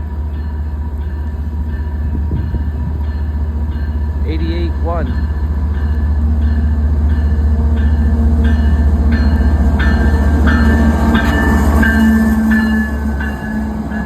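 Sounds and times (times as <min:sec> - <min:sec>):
freight train rumble: 0:00.0 - 0:14.0
train wheels clacking over rail joints: 0:05.0 - 0:14.0.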